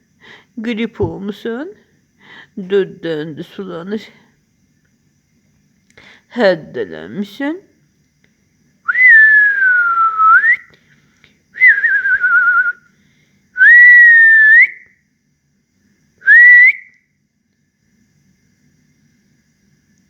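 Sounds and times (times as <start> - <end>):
person whistling: 8.9 - 10.7, 11.6 - 12.8, 13.6 - 14.9, 16.2 - 17.0.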